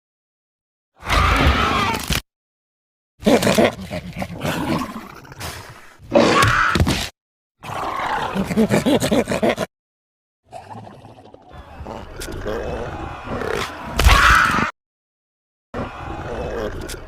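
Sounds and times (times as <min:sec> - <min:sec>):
creature roars: 0:01.0 - 0:02.1, 0:03.2 - 0:06.8, 0:07.6 - 0:08.9, 0:11.5 - 0:14.7, 0:15.8 - 0:17.0.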